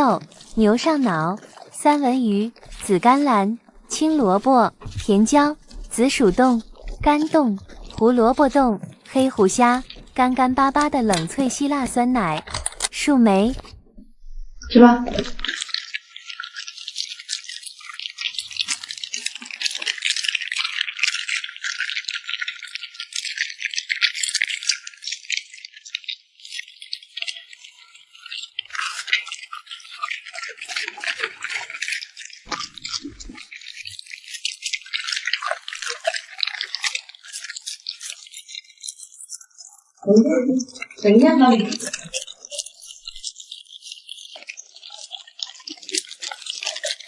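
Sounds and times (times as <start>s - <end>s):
dogs crunching crisp food: 0.0s - 13.8s, 15.1s - 47.0s.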